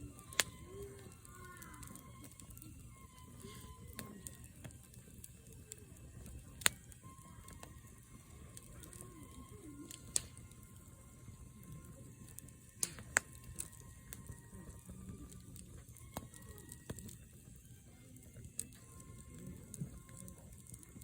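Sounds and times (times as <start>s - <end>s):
campfire crackling: 0.0s - 21.0s
sharp pops of fire: 0.1s - 7.8s, 9.8s - 10.8s, 12.2s - 17.4s.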